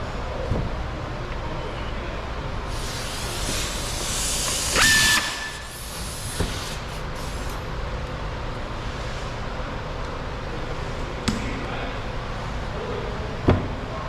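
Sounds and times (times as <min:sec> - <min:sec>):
power driver whine: 0:03.8 - 0:07.6.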